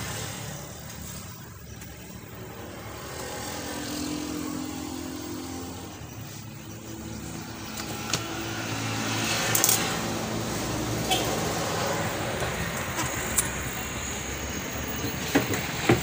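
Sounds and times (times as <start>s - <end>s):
steady rushing background noise: 0.0s - 16.0s
cables and plugs clicking: 7.7s - 8.4s.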